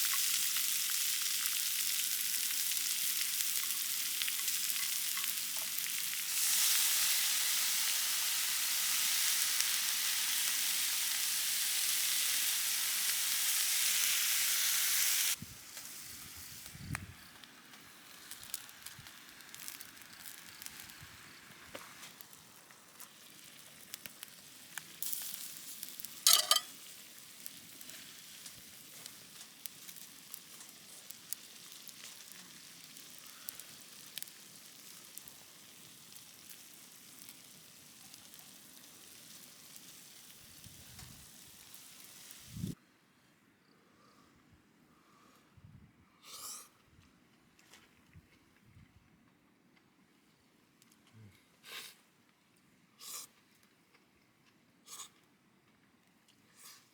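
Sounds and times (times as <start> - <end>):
crackles: 0.0 - 7.1, 15.3 - 42.8
food sizzling in hot pan: 0.0 - 17.0, 17.6 - 42.8.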